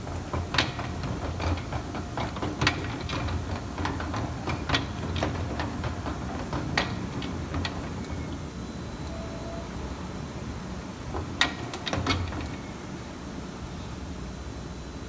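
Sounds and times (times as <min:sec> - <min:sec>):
mechanical clicks and clacks: 0:00.0 - 0:08.3.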